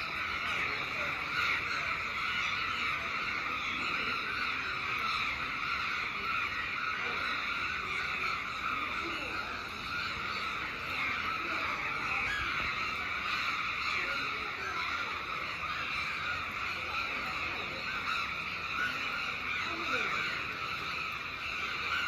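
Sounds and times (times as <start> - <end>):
crows cawing: 0.0 - 22.0.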